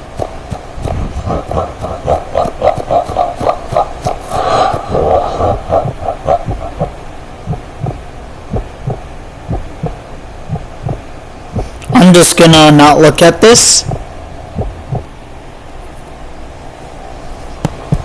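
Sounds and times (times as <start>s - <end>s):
pounding heartbeat: 0.0s - 11.8s, 13.8s - 15.2s, 17.8s - 18.0s.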